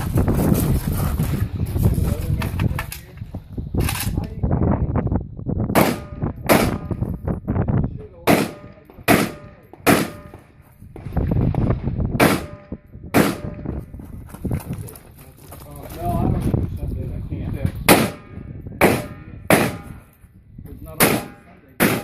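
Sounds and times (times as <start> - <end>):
rifle shots: 5.7 - 7.0, 8.3 - 10.5, 12.2 - 13.7, 17.9 - 20.1, 21.0 - 22.0.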